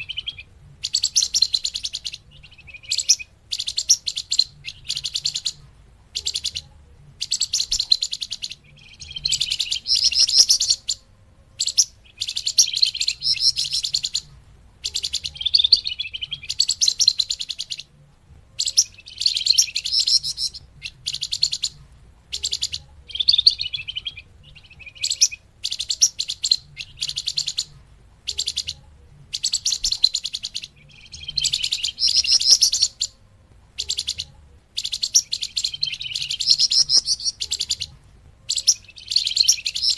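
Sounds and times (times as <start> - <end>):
bird chattering and trilling: 0.0 - 33.2, 33.8 - 39.9.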